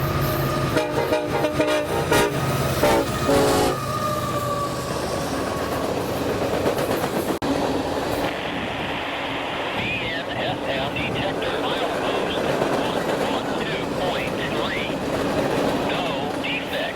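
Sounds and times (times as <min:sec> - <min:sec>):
train running noise: 0:00.0 - 0:16.9
locomotive horn blasts: 0:00.4 - 0:03.8.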